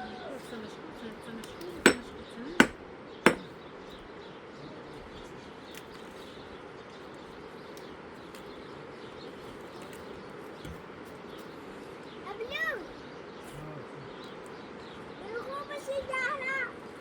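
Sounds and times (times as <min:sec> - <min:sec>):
outdoor background noise: 0:00.0 - 0:17.0.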